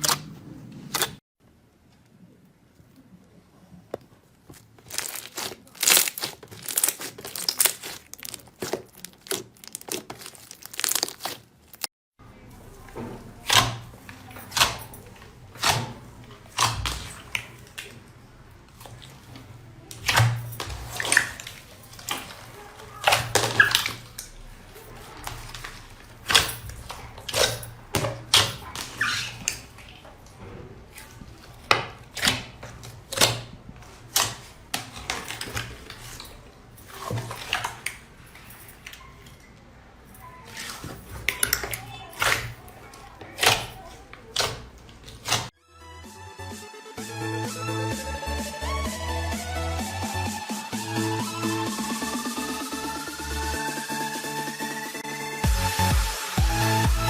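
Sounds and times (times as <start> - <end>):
slime crackling and popping: 4.6 - 11.9.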